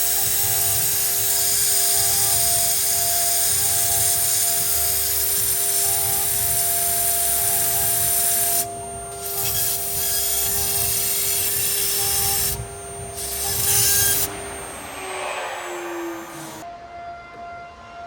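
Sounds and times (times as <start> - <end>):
router bit cutting wood: 0.0 - 16.6
router spindle whine: 0.0 - 16.9
tone sliding lower: 13.8 - 16.7.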